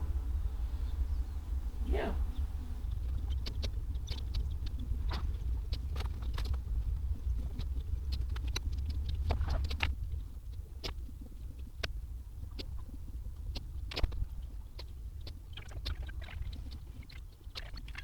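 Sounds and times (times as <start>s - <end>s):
steady low hum: 0.0s - 5.9s.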